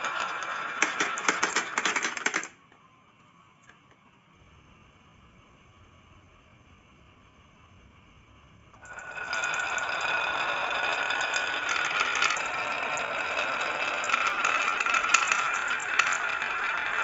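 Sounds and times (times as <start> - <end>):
marbles rolling down wooden track: 0.0 - 2.5, 8.8 - 17.0.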